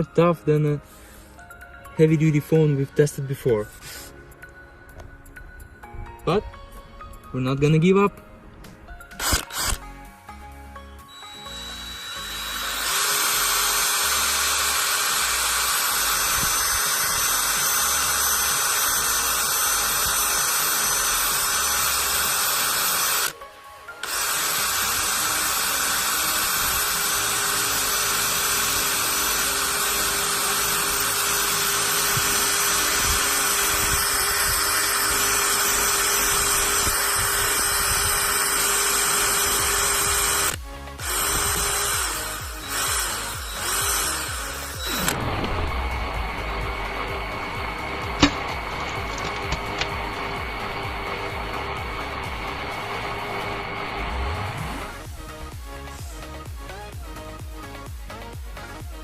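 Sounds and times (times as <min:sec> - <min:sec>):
power drill boring into phone: 0:09.1 - 0:10.0, 0:11.1 - 0:23.4, 0:24.0 - 0:55.0.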